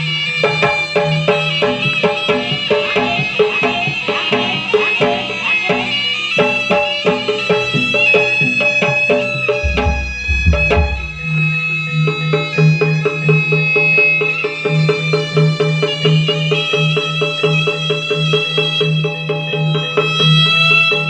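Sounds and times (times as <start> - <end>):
drums: 0.0 - 11.8
gamelan metal strokes: 9.6 - 11.3.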